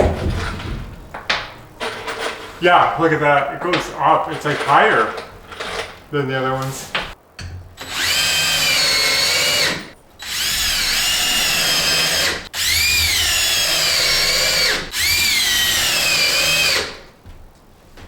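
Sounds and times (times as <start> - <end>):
power drill driving screws: 0.0 - 2.6, 3.7 - 6.1, 7.8 - 17.1.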